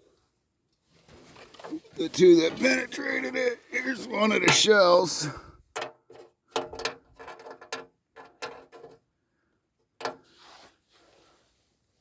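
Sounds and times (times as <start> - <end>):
small metal objects clicking and rattling: 5.7 - 9.0.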